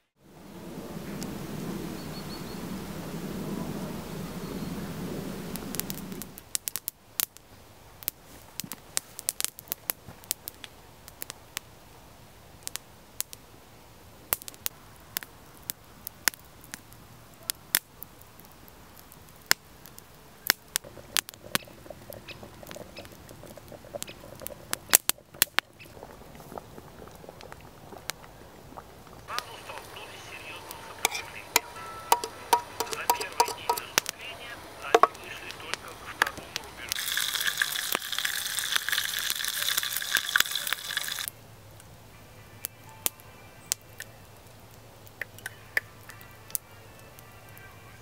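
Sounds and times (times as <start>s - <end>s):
low rustling noise: 0.0s - 6.5s
campfire crackling and popping: 0.3s - 47.8s.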